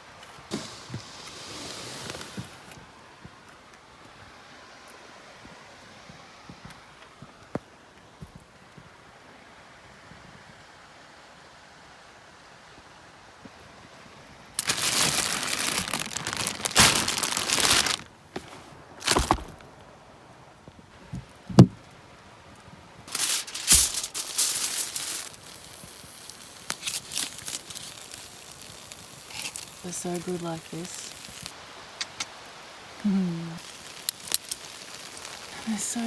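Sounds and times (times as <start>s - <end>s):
wrapping crinkling and rustling: 0.2s - 2.8s, 14.6s - 19.7s, 23.1s - 31.6s, 33.1s - 36.0s.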